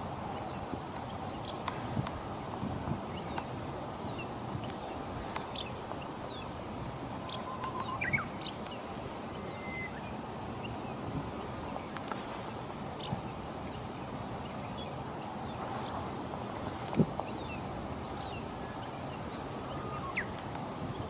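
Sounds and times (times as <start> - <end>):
outdoor background noise: 0.0 - 21.0
faint bird calls: 19.6 - 20.4.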